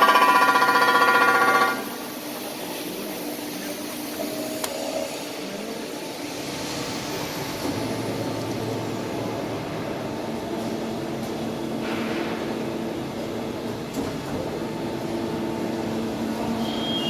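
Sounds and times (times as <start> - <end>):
loud ringing tone: 0.0 - 2.0
grinding machine whirring: 0.0 - 7.9.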